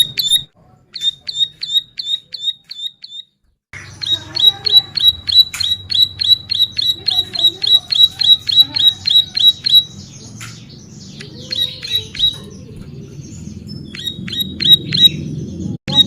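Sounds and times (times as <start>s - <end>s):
bird singing sharp high notes: 0.0s - 12.5s
bird scratchy calls: 3.8s - 15.2s.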